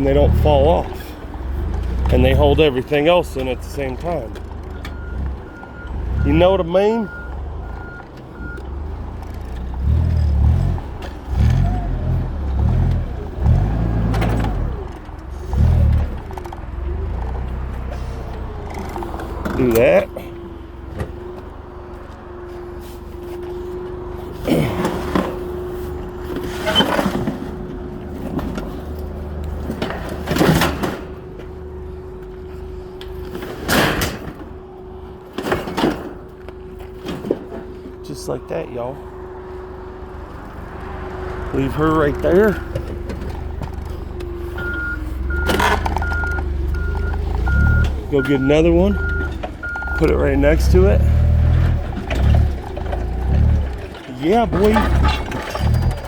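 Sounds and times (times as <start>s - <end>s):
forklift engine revving: 0.0s - 22.0s, 22.6s - 56.0s
forklift reverse alarm beeping: 3.3s - 9.6s, 44.2s - 51.8s
metal clanks and scrapes: 24.2s - 31.2s, 50.6s - 56.0s
metallic clank: 51.6s - 56.0s.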